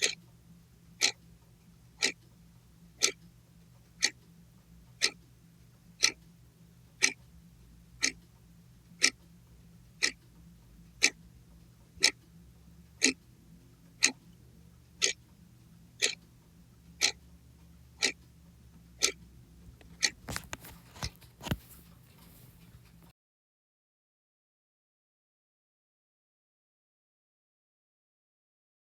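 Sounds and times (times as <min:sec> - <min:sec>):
clock ticking: 0:01.0 - 0:01.2, 0:02.0 - 0:02.2, 0:03.0 - 0:03.2, 0:04.0 - 0:04.2, 0:05.0 - 0:05.2, 0:06.0 - 0:06.3, 0:07.0 - 0:07.2, 0:08.0 - 0:08.2, 0:09.0 - 0:09.2, 0:10.0 - 0:10.2, 0:11.0 - 0:11.2, 0:12.0 - 0:12.2, 0:13.0 - 0:13.2, 0:13.9 - 0:14.2, 0:15.0 - 0:15.2, 0:16.0 - 0:16.2, 0:17.0 - 0:17.2, 0:18.0 - 0:18.2, 0:19.0 - 0:19.2.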